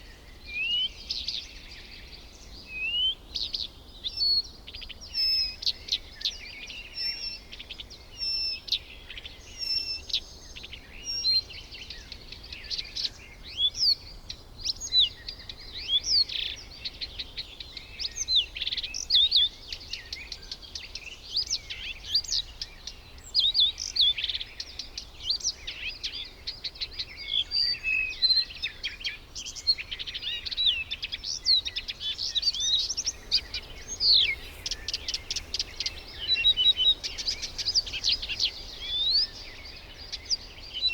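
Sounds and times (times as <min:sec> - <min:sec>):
birds chirping: 0:29.6 - 0:40.9.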